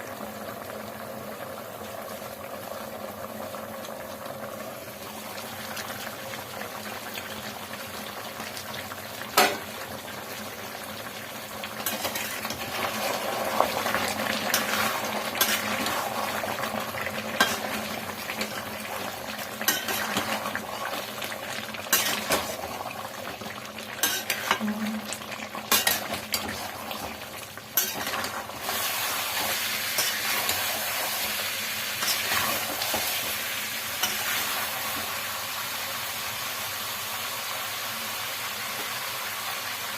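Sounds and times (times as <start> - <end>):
curry sizzling in a pan: 0.0 - 39.9
metal spoon clinking on pan: 19.7 - 20.3, 24.0 - 24.6.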